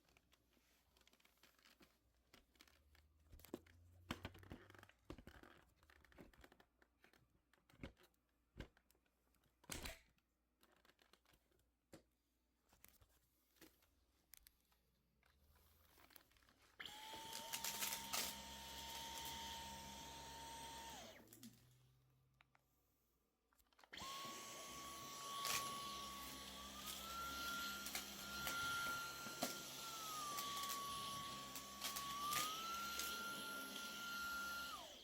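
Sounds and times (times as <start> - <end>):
vacuum cleaner motor whine: 16.8 - 21.5, 24.0 - 35.0.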